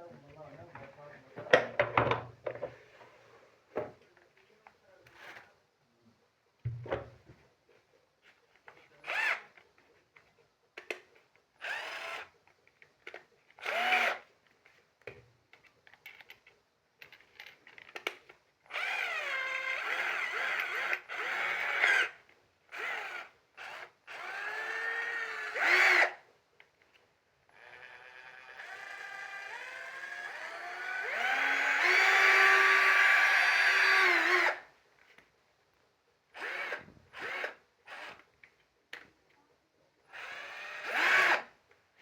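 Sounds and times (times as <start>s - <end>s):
cordless drill motor whining: 9.0s - 9.5s, 11.6s - 12.3s, 13.6s - 14.2s, 18.7s - 26.2s, 27.5s - 34.6s, 36.4s - 38.3s, 40.1s - 41.5s.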